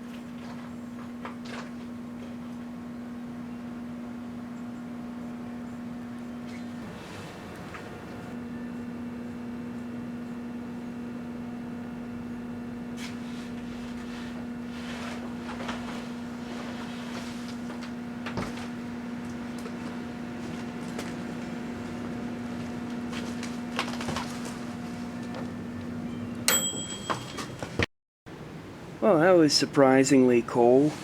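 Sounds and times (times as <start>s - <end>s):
microwave oven humming: 0.0s - 29.4s
microwave shutoff click: 6.5s - 8.4s.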